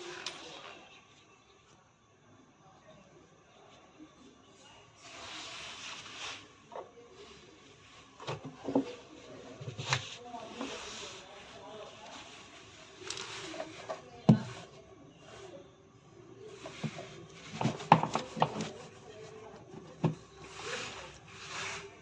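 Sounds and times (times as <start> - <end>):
rustling and scraping: 5.0 - 15.6, 16.4 - 22.0.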